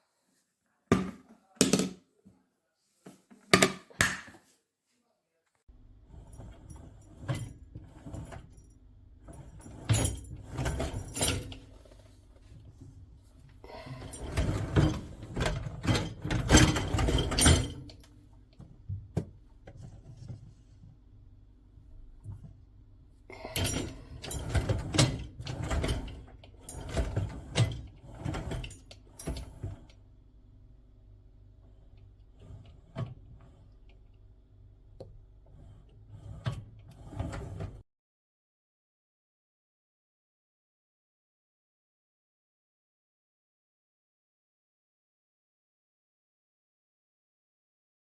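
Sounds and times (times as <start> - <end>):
rattles and knocks of handling: 9.3 - 20.8.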